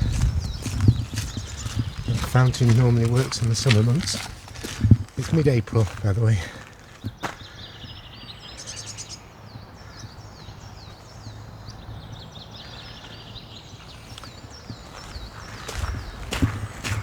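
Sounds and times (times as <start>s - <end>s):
footstep: 0.0s - 7.6s, 13.0s - 17.0s
songbirds singing: 0.0s - 17.0s.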